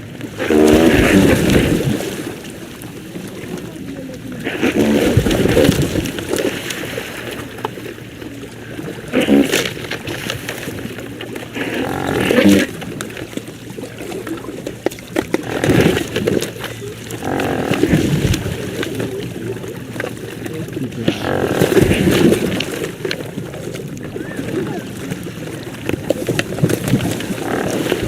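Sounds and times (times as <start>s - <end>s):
pelicans grunting calls: 0.4s - 1.8s, 11.5s - 12.9s, 15.3s - 19.0s, 21.0s - 22.8s, 27.0s - 28.0s.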